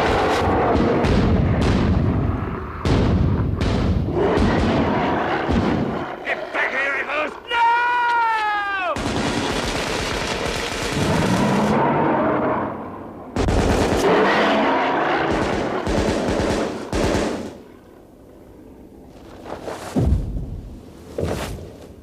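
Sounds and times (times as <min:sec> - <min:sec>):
rifles firing rapid volley: 0:02.8 - 0:06.0, 0:08.9 - 0:11.7, 0:13.4 - 0:17.6.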